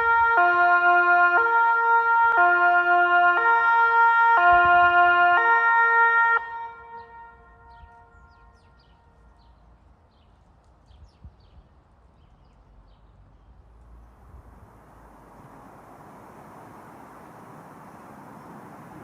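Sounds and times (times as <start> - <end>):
two-tone electronic siren: 0.0 - 8.1, 14.4 - 19.0.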